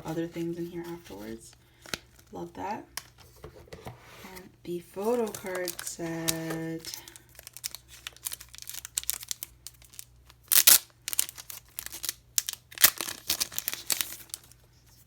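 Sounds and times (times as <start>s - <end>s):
packaging ripping: 5.0s - 14.6s
packaging crinkling: 5.0s - 14.7s.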